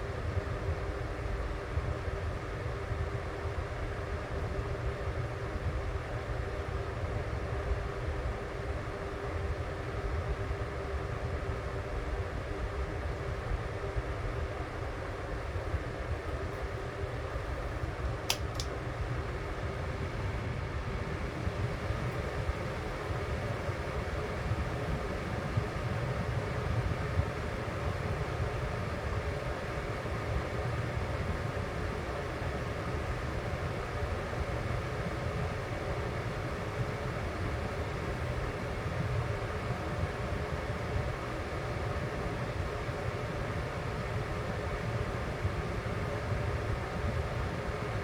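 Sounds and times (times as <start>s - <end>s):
electric fan running: 0.0s - 48.0s
short sharp clicks: 18.3s - 18.7s.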